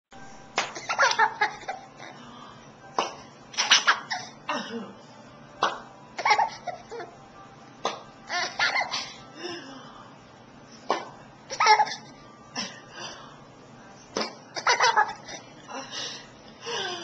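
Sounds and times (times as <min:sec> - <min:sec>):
baby laughing: 0:00.7 - 0:02.2, 0:03.6 - 0:04.4, 0:06.2 - 0:07.1, 0:08.3 - 0:09.2, 0:11.5 - 0:12.1, 0:14.5 - 0:15.4.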